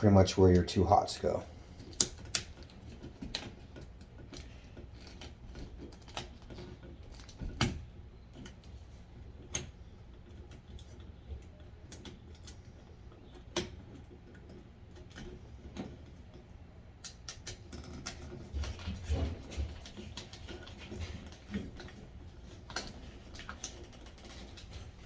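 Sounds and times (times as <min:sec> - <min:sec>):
small clicks and taps of wiring: 0:01.8 - 0:08.7, 0:09.4 - 0:18.4.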